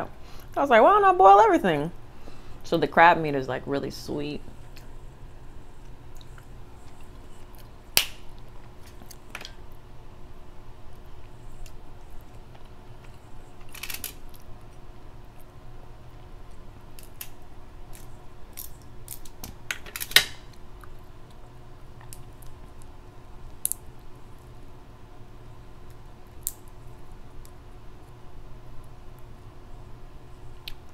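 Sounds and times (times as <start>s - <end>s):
crab shells cracking: 6.1s - 9.8s, 11.6s - 14.8s, 16.9s - 21.4s, 22.0s - 23.9s, 25.9s - 26.8s.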